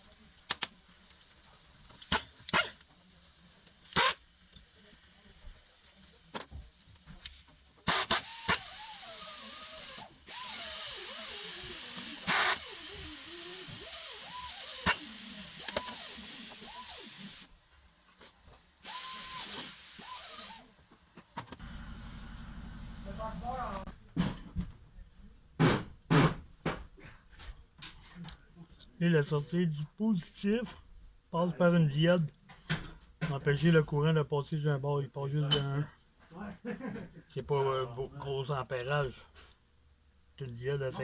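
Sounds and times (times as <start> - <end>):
small power tool running: 7.9 - 17.5, 18.8 - 23.8.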